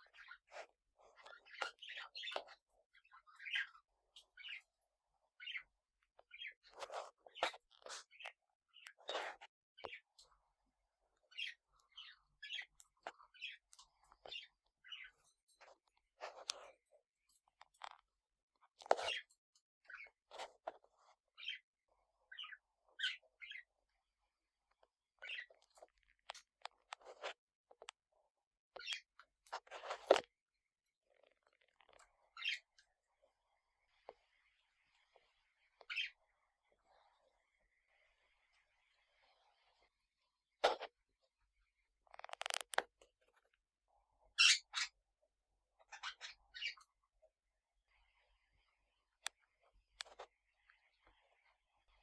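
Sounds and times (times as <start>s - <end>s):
parrots chirping softly: 0.0s - 52.0s
parrots chirping: 44.4s - 44.9s, 45.9s - 46.8s.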